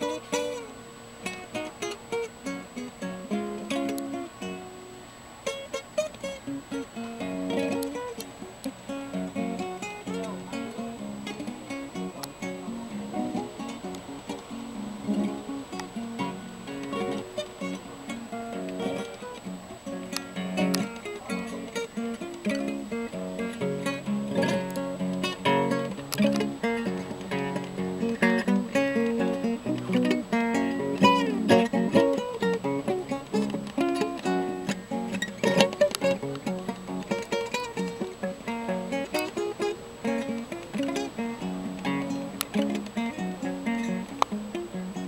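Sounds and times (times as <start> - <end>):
fingerstyle acoustic guitar: 0.0 - 45.0.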